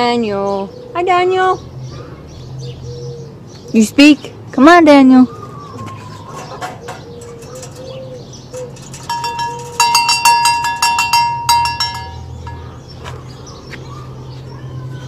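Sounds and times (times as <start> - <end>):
doves cooing: 0.4 - 4.3, 5.0 - 10.0
small metal bell ringing rapidly: 8.7 - 12.7.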